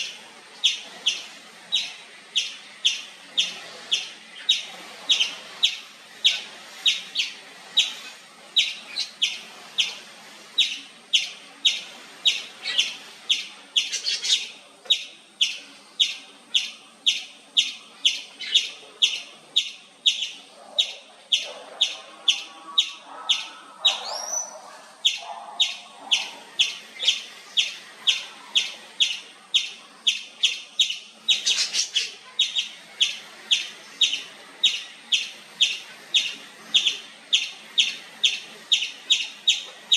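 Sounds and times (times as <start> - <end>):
squirrel chirping: 0.0 - 10.0, 10.6 - 39.9
faint lower animal calls: 10.6 - 39.7.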